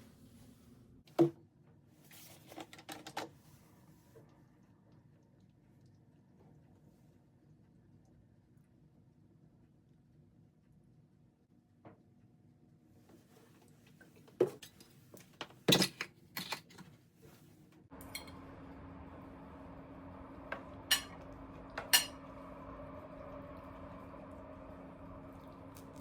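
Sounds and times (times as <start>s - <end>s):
humming appliance: 17.9s - 26.0s.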